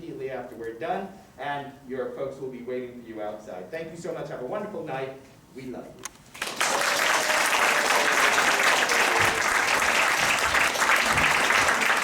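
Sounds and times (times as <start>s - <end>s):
audience applauding: 6.3s - 12.0s.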